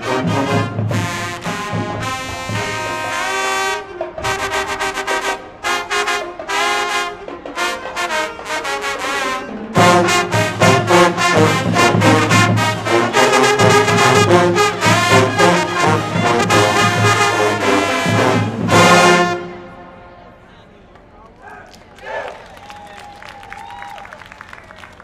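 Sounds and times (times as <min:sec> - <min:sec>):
brass pep band playing: 0:00.0 - 0:20.4.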